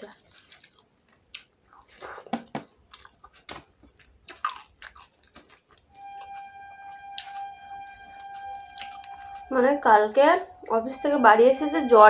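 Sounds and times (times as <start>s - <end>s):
chewing and mouth smacks: 0.0s - 5.9s
steady tone with overtones: 5.9s - 12.0s.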